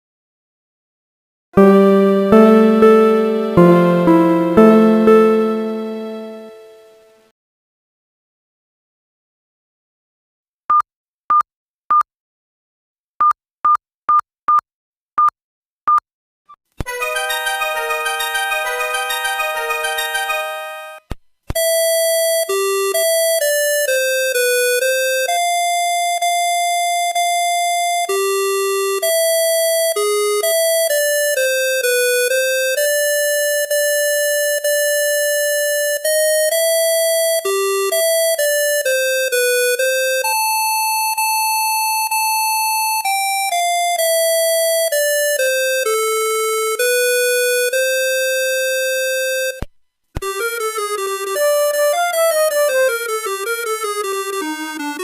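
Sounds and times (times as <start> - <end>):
phone ringtone melody: 1.6 - 6.8, 16.9 - 21.0.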